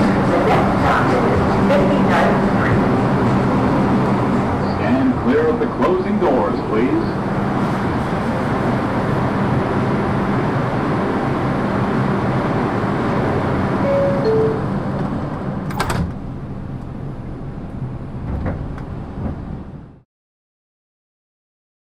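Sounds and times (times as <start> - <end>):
subway train humming: 0.0 - 20.0
two-note door chime: 13.8 - 14.8
train doors shutting with a bang: 13.9 - 16.3, 18.2 - 19.7.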